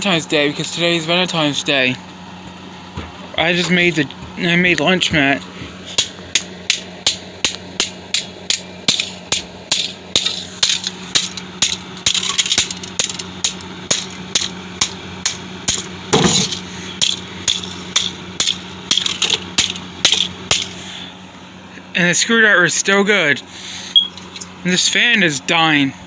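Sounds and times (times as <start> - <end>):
steady low hum: 0.0 - 26.0
blows smashing computer parts: 5.9 - 20.8.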